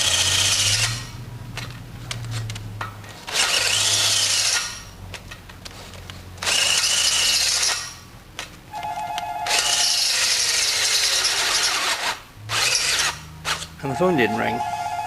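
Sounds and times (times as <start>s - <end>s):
power drill boring: 0.0s - 1.2s, 3.3s - 4.9s, 6.4s - 8.0s, 9.5s - 13.8s.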